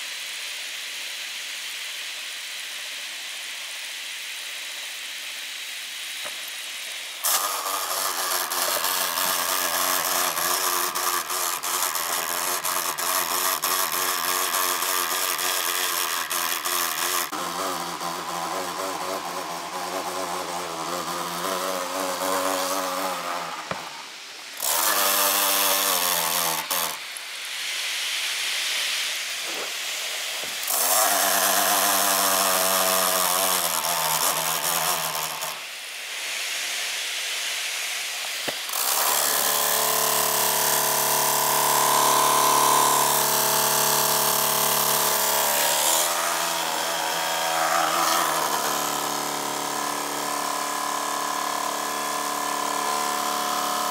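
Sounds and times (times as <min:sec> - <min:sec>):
laptop fan grinding and squealing: 0:07.2 - 0:27.1, 0:38.7 - 0:51.1.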